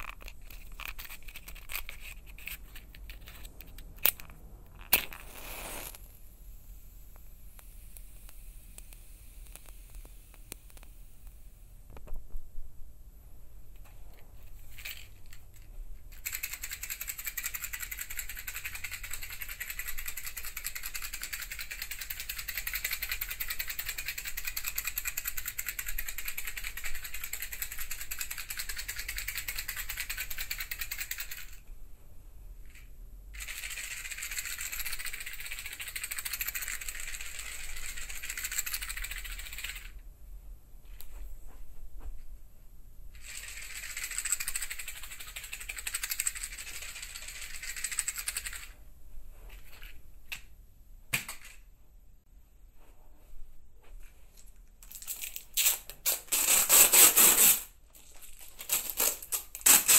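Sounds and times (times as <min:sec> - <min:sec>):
small hard objects rattling: 0:00.0 - 0:06.0, 0:43.2 - 0:48.7, 0:54.8 - 0:56.6.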